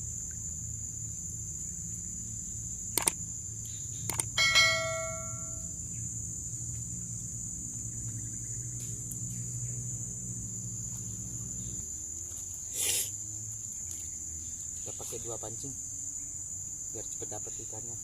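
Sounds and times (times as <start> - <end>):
insects buzzing: 0.0 - 18.0
ringing tone: 4.4 - 5.7.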